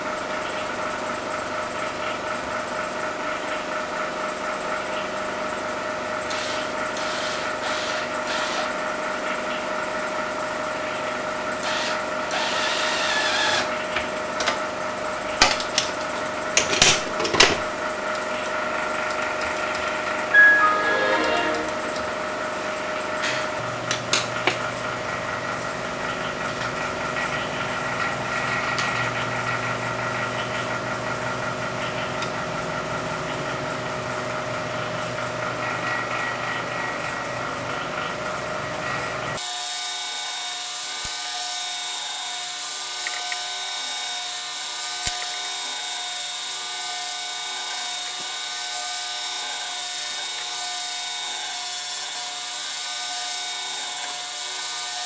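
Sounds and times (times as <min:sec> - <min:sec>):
three d printer motors whining: 0:06.3 - 0:08.8.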